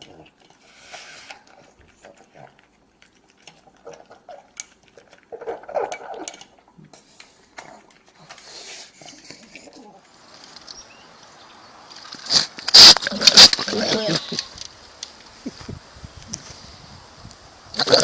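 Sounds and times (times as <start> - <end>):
small clicks and knocks: 1.4 - 9.4
animal making odd sounds: 3.4 - 7.0, 12.3 - 14.5, 17.8 - 18.0.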